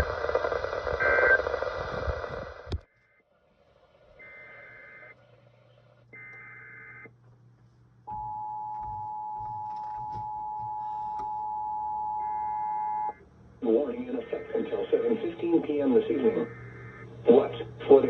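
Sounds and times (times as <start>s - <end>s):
harsh warbling data bursts: 0.0s - 2.6s.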